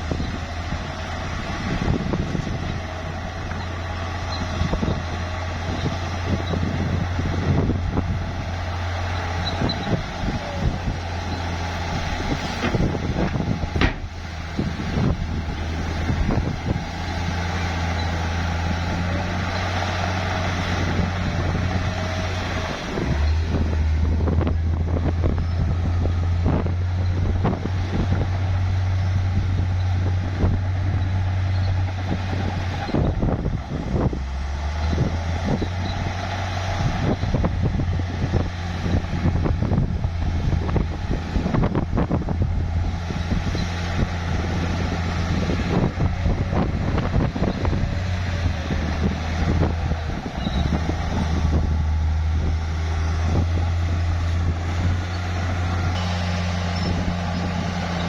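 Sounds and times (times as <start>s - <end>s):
bulldozer diesel engine running: 0.0s - 58.0s
clanking and knocking of tracks: 12.3s - 14.2s, 55.9s - 58.0s.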